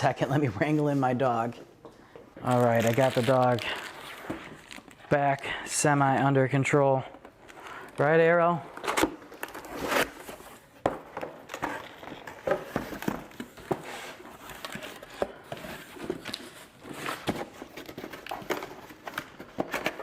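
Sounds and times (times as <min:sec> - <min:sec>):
fabric and packaging rustling: 0:02.4 - 0:05.3.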